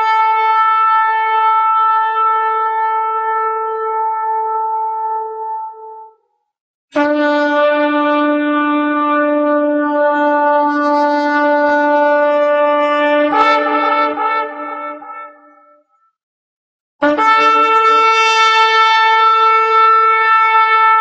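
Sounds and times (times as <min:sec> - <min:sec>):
shofar blowing: 0:07.0 - 0:15.7, 0:17.0 - 0:21.0.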